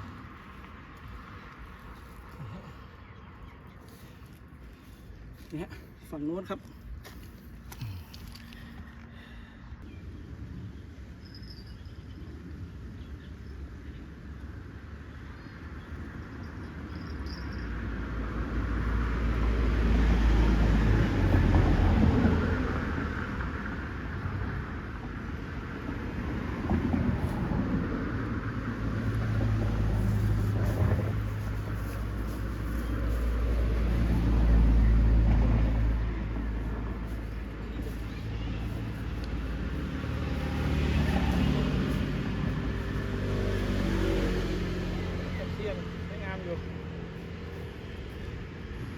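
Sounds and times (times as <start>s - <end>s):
vehicle passing rumble: 13.7s - 48.9s.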